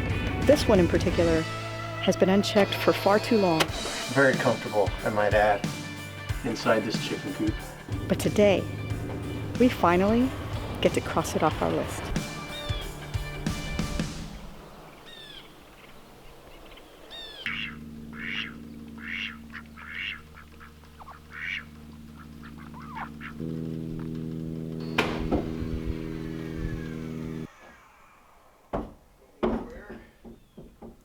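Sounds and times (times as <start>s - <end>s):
low droning chord: 0.0s - 14.8s, 17.4s - 27.5s
short bird calls: 14.3s - 23.4s.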